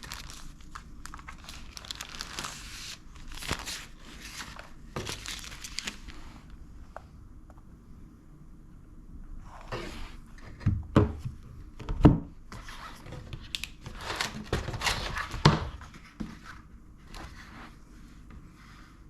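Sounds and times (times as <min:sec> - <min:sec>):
packaging crinkling and rustling: 0:00.0 - 0:06.2, 0:12.6 - 0:16.2.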